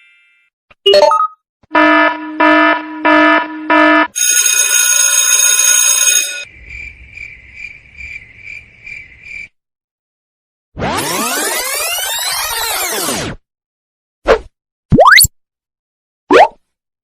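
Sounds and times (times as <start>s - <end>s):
short buzzy beeps: 0.9s - 4.1s.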